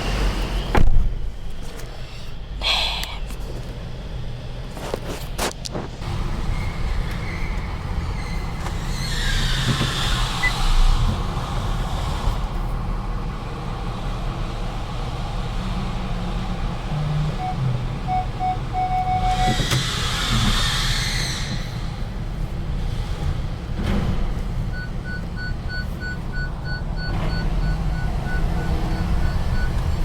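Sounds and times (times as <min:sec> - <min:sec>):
car engine and road rumble: 0:00.0 - 0:30.0
passing vehicles tyre hiss: 0:05.9 - 0:12.9, 0:19.0 - 0:23.5.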